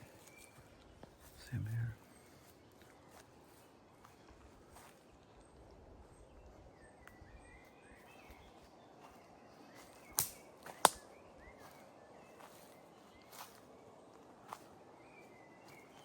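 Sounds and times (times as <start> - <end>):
sharp cracks: 10.2 - 11.0.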